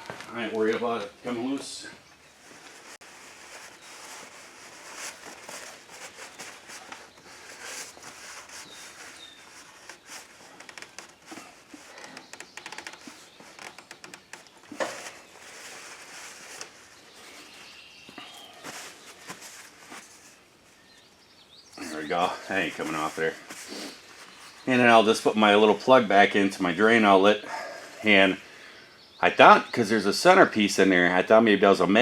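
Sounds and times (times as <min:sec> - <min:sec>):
handling clicks and scrapes: 0:02.4 - 0:20.4.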